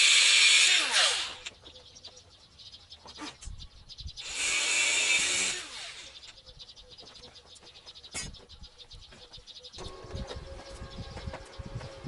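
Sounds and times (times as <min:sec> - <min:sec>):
power drill spinning: 0:00.0 - 0:01.5, 0:04.2 - 0:06.2.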